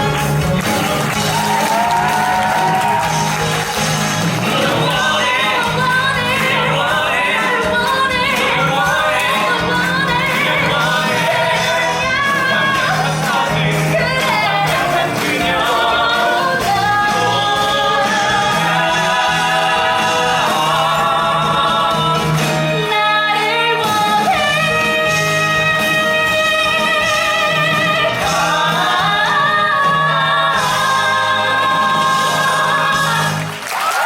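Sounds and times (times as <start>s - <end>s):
backing music: 0.0s - 34.0s
cast singing together: 3.6s - 33.6s.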